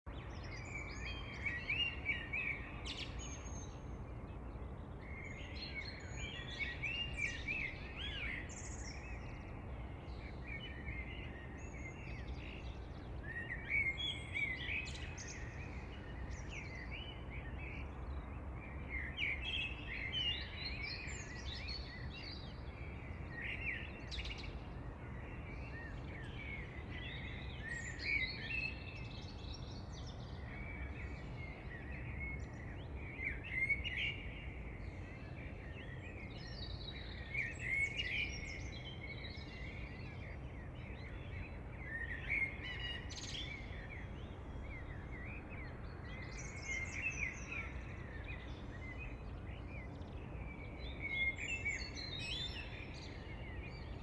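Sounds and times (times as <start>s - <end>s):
songbirds chirping and singing: 0.1s - 54.0s.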